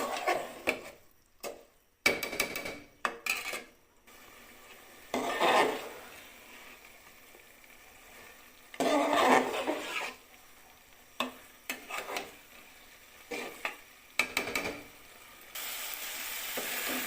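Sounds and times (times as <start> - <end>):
spatula scraping rice in pot: 0.0 - 1.0, 3.0 - 3.8, 4.7 - 6.8, 8.1 - 10.4, 11.2 - 14.7
frying sizzle: 0.0 - 17.0.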